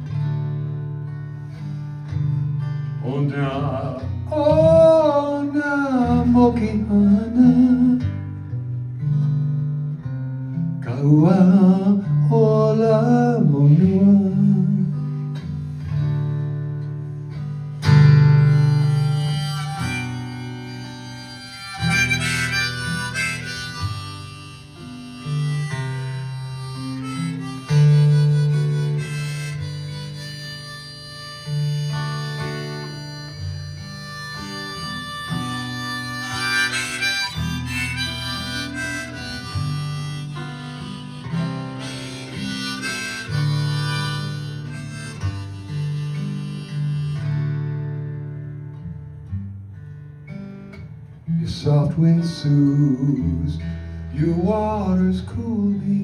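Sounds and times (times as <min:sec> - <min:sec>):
strummed acoustic guitar: 0:00.0 - 0:56.0
melody of long held notes: 0:18.2 - 0:48.0.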